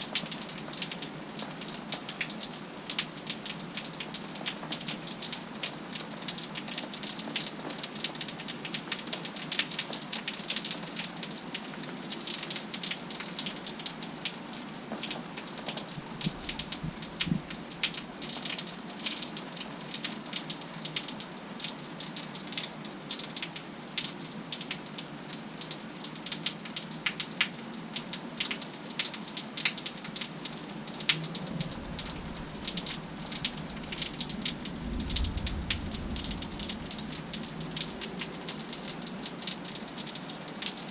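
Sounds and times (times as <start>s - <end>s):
steady rain with drop splashes: 0.0s - 40.9s
low rumble: 31.4s - 38.0s.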